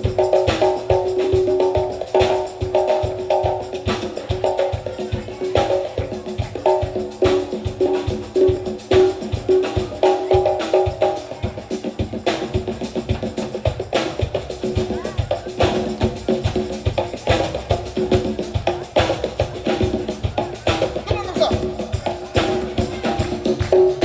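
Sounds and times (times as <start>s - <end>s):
fast percussion beat: 0.0s - 24.0s
wood-block and tambourine hits: 0.0s - 24.0s
sustained instrumental notes: 21.0s - 22.0s.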